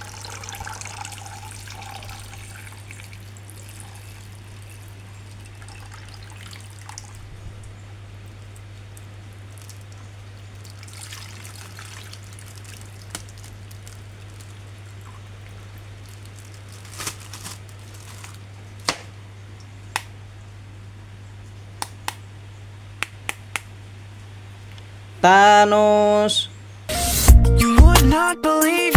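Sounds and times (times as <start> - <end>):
steady low hum: 0.0 - 26.9
packaging rustling: 12.8 - 19.1.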